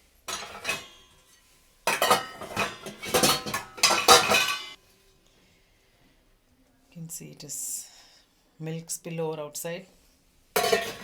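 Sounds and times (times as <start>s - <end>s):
metal utensils and dishes clattering: 0.2s - 4.8s, 10.6s - 11.0s.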